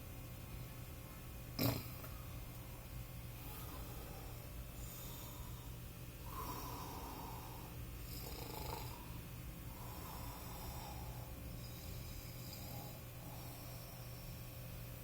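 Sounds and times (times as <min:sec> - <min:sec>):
steady low hum: 0:00.0 - 0:15.0
person snoring: 0:01.6 - 0:02.0, 0:03.5 - 0:14.4.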